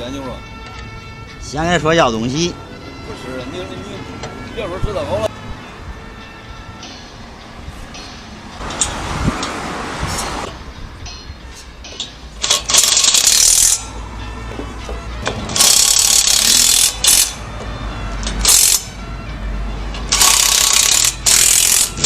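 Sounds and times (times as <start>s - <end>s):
loud mechanical rattling: 12.4s - 13.9s, 15.4s - 17.4s, 20.0s - 22.0s.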